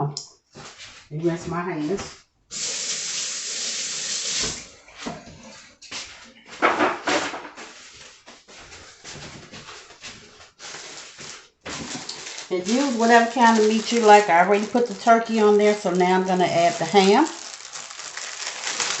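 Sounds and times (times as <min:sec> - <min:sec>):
kitchen tap running: 0:02.5 - 0:04.7
rustling and light knocks: 0:05.0 - 0:12.9.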